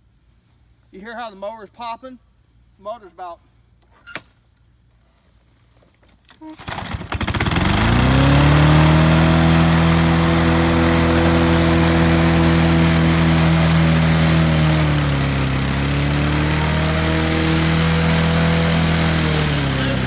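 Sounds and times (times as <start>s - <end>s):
lawn mower engine at high speed: 6.5s - 20.0s.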